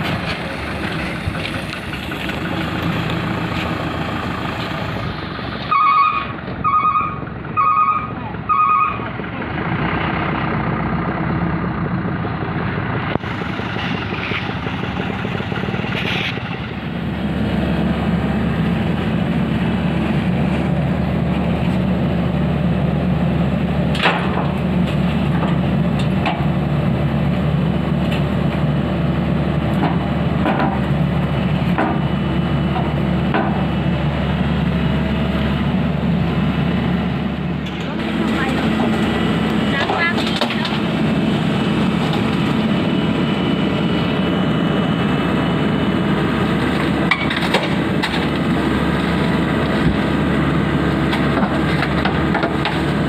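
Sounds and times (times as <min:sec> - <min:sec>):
vehicle engine running: 0:00.0 - 0:53.0.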